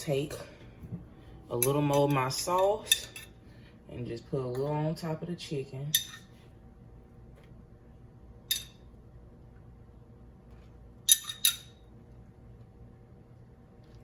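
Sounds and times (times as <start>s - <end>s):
spoon clinking against container: 8.5s - 8.8s, 11.1s - 11.8s.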